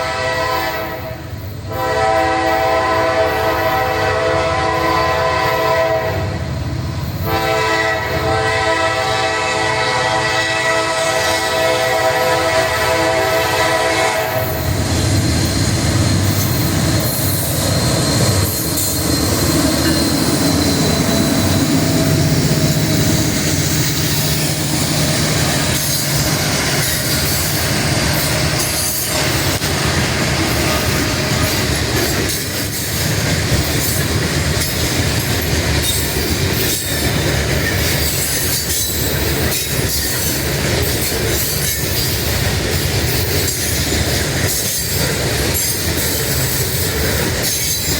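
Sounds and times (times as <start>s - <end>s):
train wheels rumbling on rail: 0.0s - 47.9s
high wheel squeal: 14.3s - 29.6s, 43.1s - 47.9s
wheels knocking on rail joints: 14.7s - 47.9s.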